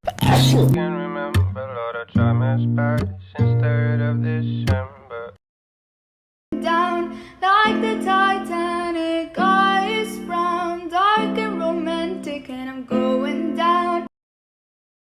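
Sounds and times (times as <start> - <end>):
strummed acoustic guitar: 0.0 - 5.1
person singing: 0.0 - 5.4, 6.5 - 14.1.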